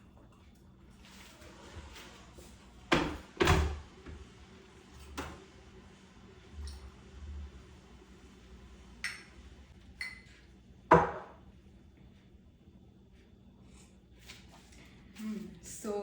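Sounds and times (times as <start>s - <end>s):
knocks on a kitchen counter: 2.9s - 3.8s, 10.9s - 11.4s.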